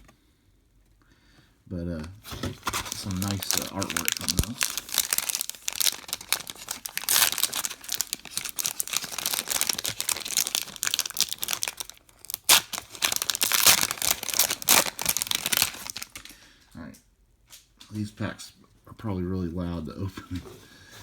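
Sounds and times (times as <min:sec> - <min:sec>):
plastic wrapper crinkling: 0:02.2 - 0:16.5.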